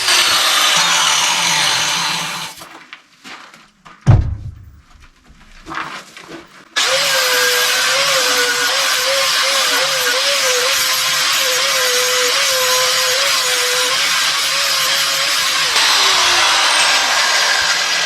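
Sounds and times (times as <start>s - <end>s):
angle grinder grinding steel: 0.0s - 2.6s, 6.8s - 18.0s
loud knock: 4.1s - 5.1s.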